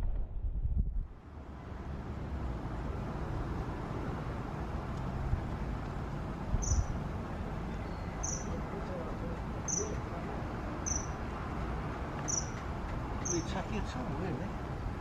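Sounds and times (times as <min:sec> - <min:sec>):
low rumble: 0:00.0 - 0:01.2.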